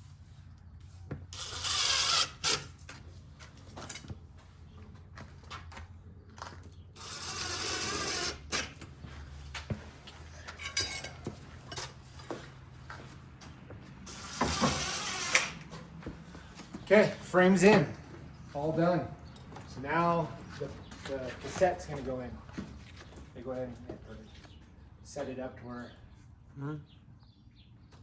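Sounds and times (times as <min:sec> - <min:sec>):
screwdriver driving screws: 0:01.4 - 0:02.8, 0:14.1 - 0:15.7.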